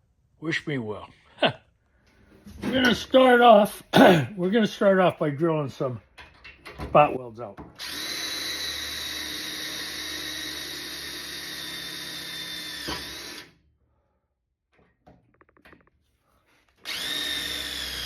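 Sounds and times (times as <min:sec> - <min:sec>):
electric drill drilling into steel: 0:07.8 - 0:13.6, 0:16.8 - 0:18.0.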